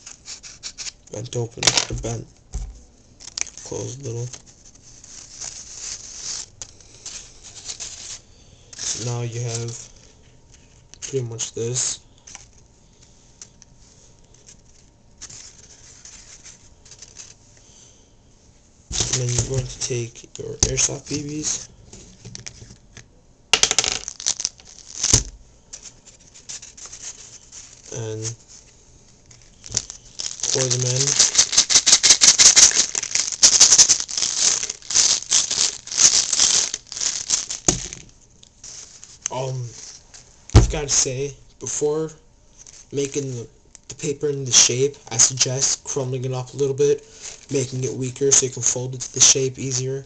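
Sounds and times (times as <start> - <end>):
plastic pellets rattling onto paper: 0.0 - 13.6, 14.2 - 17.4, 18.9 - 23.0, 23.6 - 41.4.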